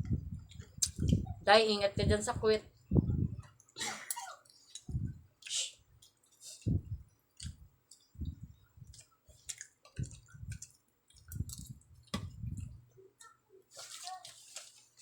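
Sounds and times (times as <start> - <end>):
soft low thumps: 0.0 - 3.5, 11.6 - 12.8
chewing with mouth clicks: 0.4 - 1.2, 3.6 - 12.7.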